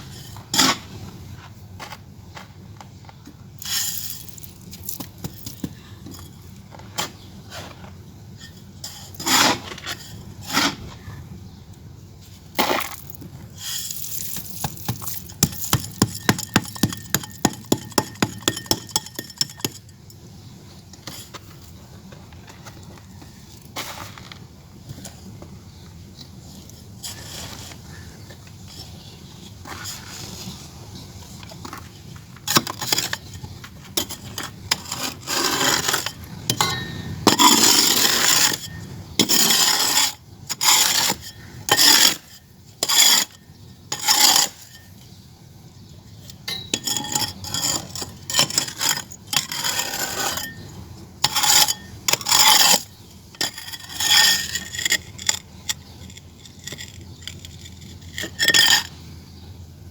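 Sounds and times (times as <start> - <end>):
clay scraping and rubbing: 12.6 - 19.9, 26.5 - 45.1, 46.6 - 50.6, 51.2 - 59.0.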